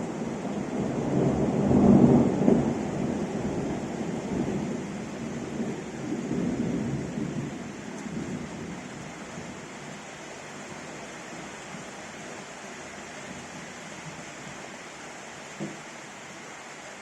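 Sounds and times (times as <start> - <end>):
low rolling thunder: 0.0 - 10.0
rain hiss: 0.0 - 17.0.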